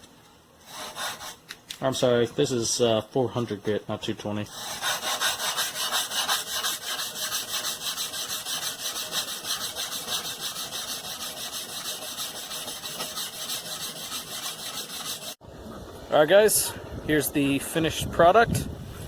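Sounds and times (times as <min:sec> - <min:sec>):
sandpaper rubbing on steel blade: 0:00.6 - 0:01.4, 0:04.5 - 0:15.4.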